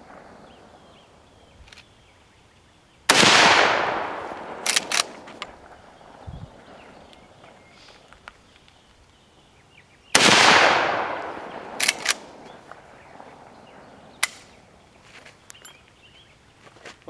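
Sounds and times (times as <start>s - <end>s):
rifle shot with echo: 0.0s - 1.4s, 3.1s - 7.5s, 10.1s - 14.7s
rifle lever clacks: 4.6s - 5.5s, 11.8s - 12.3s, 14.2s - 14.5s
sharp snap: 11.7s - 12.3s, 14.2s - 14.6s.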